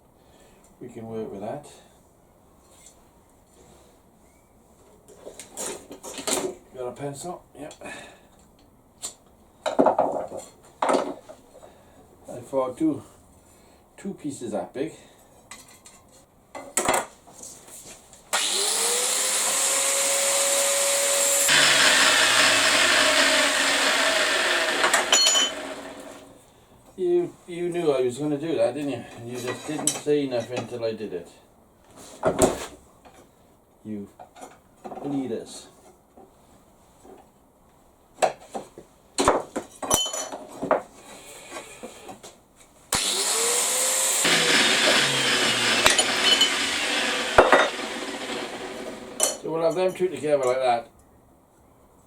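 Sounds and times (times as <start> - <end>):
electric power tool whining: 18.3 - 26.4, 42.9 - 49.4
metal tools clinking on workbench: 25.1 - 25.6, 39.7 - 40.5, 45.8 - 46.6, 49.2 - 49.9.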